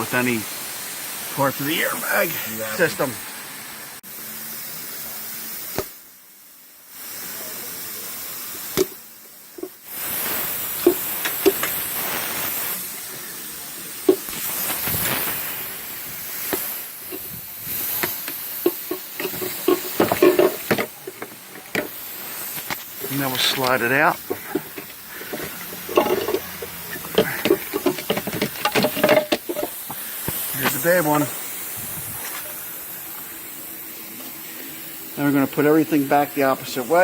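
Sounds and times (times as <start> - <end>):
steady hiss: 0.0 - 37.0
hand tools clicking and knocking: 10.8 - 11.8, 16.5 - 22.0, 22.6 - 30.4.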